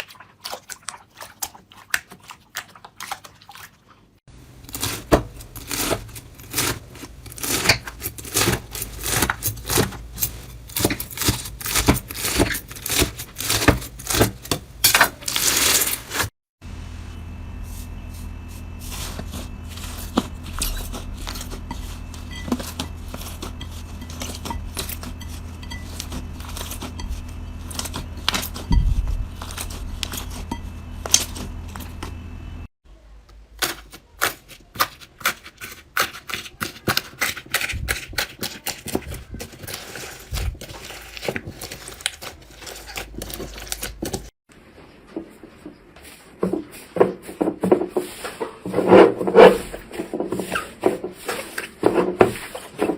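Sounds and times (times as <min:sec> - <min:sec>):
low steady hum: 0:16.6 - 0:33.2.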